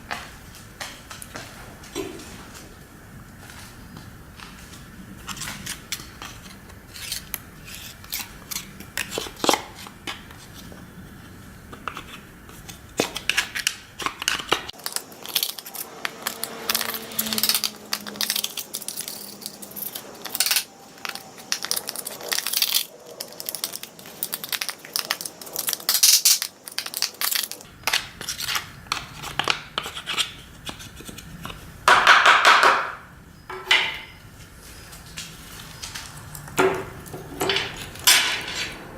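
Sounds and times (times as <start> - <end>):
metal chainsaw parts clinking: 14.8 - 22.8.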